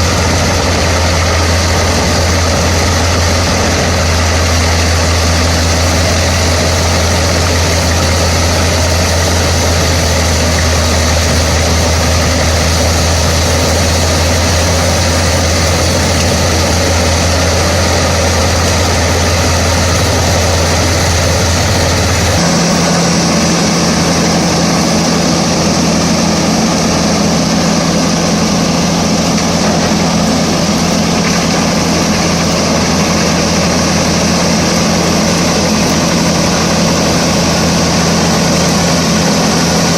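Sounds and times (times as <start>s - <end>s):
wood chipper diesel engine humming: 0.0s - 39.9s.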